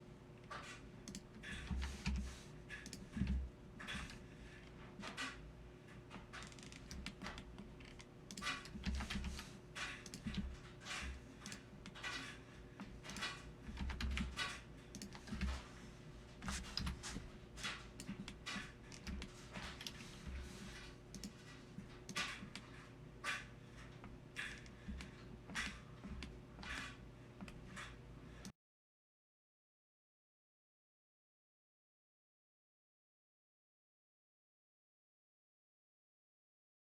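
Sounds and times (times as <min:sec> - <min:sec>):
computer keyboard keys clicking: 0:01.0 - 0:04.2, 0:06.1 - 0:15.6, 0:16.4 - 0:20.1, 0:21.1 - 0:21.4.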